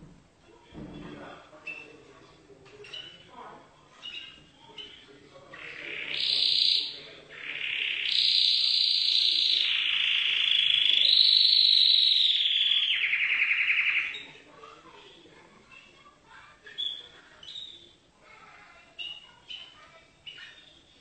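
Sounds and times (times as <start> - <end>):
canary singing rolled trills: 2.8 - 14.3, 16.6 - 18.0, 18.7 - 20.9.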